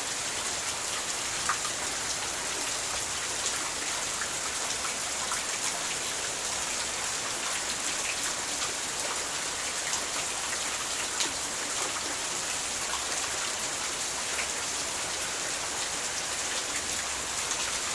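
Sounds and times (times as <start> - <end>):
rain drops on a hard surface: 0.0 - 17.9.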